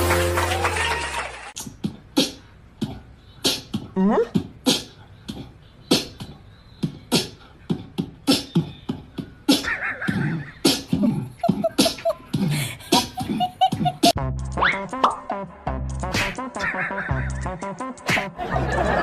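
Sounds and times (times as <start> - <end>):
person making wordless vocal sounds: 2.8 - 14.2.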